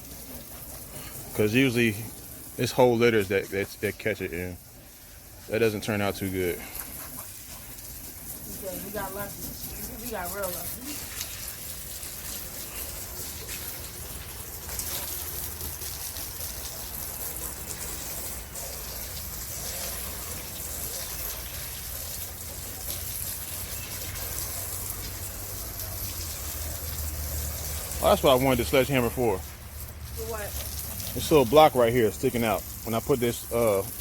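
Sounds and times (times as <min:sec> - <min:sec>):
hose spraying water: 0:00.0 - 0:34.0.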